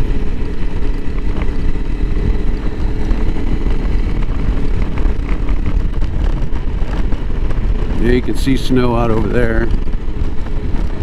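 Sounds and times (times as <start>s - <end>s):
motorcycle engine rumble: 0.0s - 11.0s.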